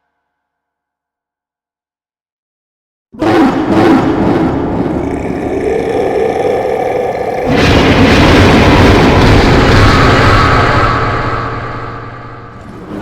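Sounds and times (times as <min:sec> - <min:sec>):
monster roar: 0:03.2 - 0:13.0.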